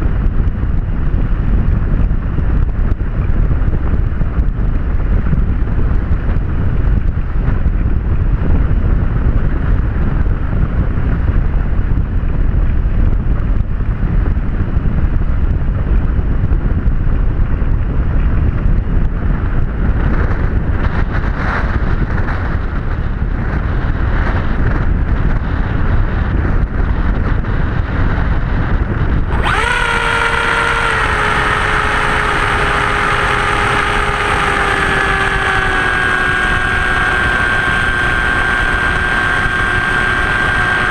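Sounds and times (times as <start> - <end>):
wind buffeting microphone: 0.0 - 40.9
model plane motor whine: 29.0 - 40.9.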